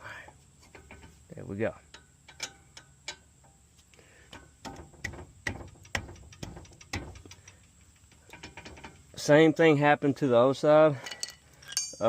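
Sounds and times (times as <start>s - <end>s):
metallic clicks of hand tools: 1.8s - 3.6s, 4.3s - 9.2s, 11.0s - 12.0s.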